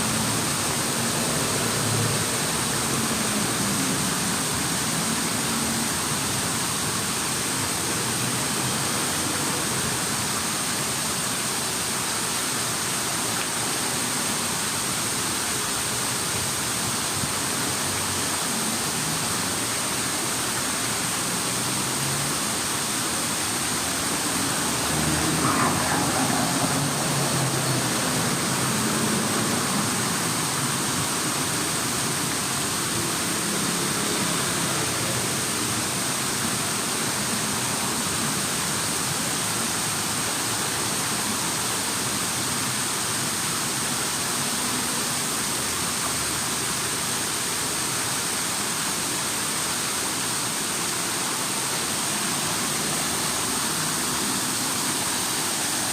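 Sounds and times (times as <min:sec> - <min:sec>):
running water rushing: 0:00.0 - 0:55.9.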